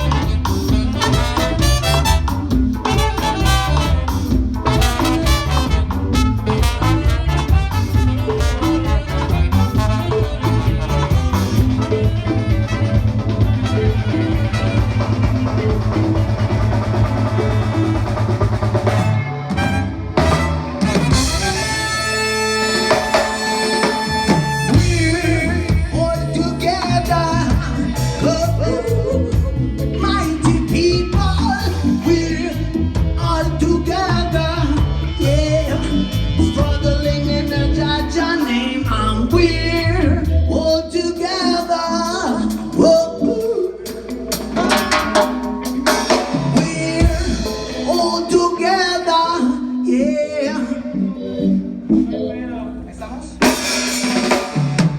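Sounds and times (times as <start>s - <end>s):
reggae band playing: 0.0s - 54.9s
person singing: 22.7s - 45.4s, 46.0s - 52.3s.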